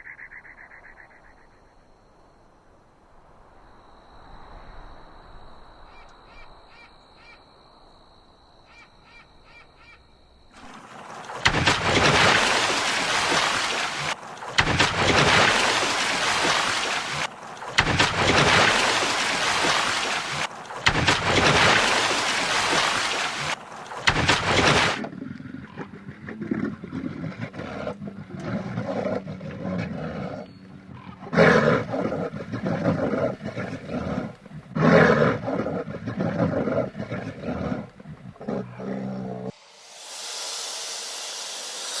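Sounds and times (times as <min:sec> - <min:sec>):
wild animal roaring and growling: 0:24.5 - 0:39.6.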